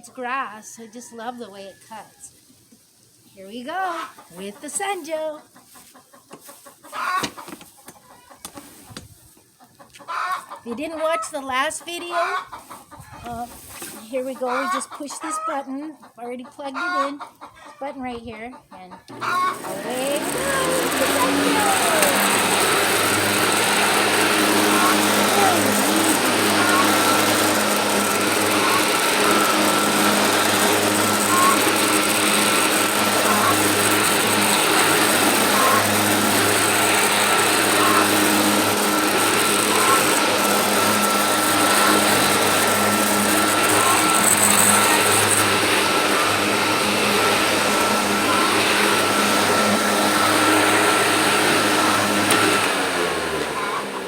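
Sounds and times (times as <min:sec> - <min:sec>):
electric lawnmower running: 0:19.1 - 0:54.0.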